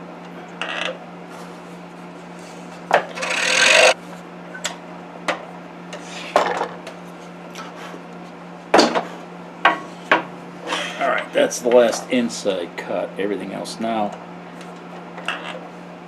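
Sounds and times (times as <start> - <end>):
scroll saw humming: 3.0 - 4.0
saw blade rasping through wood: 3.1 - 4.0.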